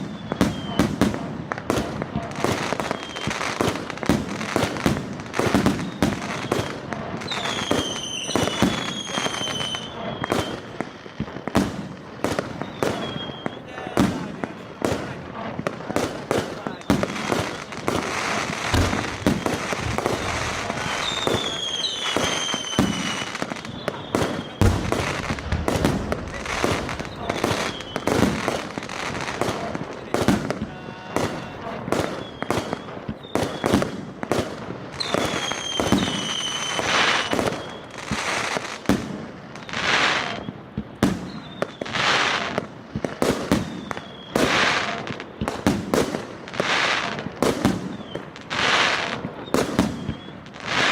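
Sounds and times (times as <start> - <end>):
falling firework whistles: 0.0 - 14.3, 16.0 - 42.6, 43.2 - 50.9
fireworks bangs and crackles: 0.0 - 50.9
firework hissing: 5.5 - 33.9.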